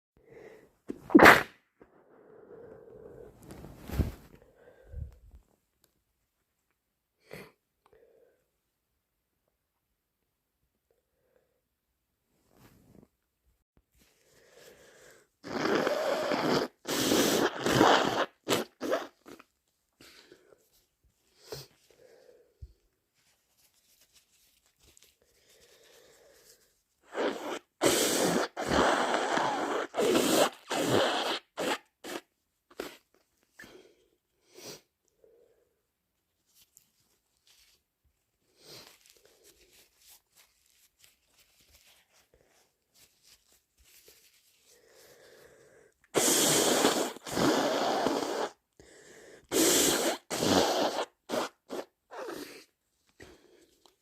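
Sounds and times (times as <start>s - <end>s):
person blowing nose: 0.9s - 1.7s, 14.3s - 20.6s, 21.3s - 22.2s, 24.4s - 33.8s, 34.4s - 34.9s, 38.5s - 53.6s
faint sniffs: 20.0s - 35.7s, 38.4s - 54.0s
rustling: 22.8s - 27.0s, 36.2s - 44.8s.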